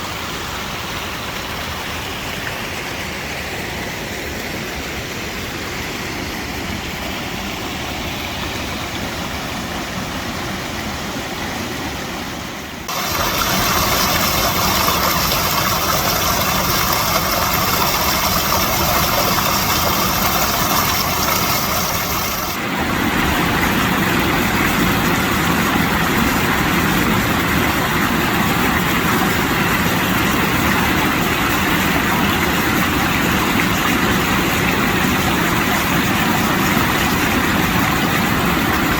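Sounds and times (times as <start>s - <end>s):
river water rushing and falling: 0.0s - 38.9s.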